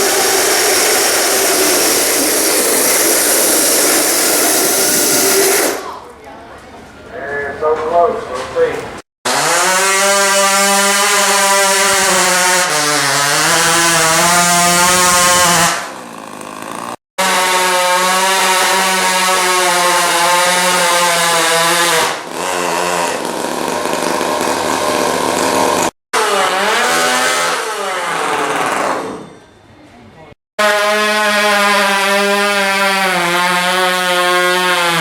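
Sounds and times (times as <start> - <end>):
rc truck engine revving: 0.0 - 6.0, 9.3 - 29.2.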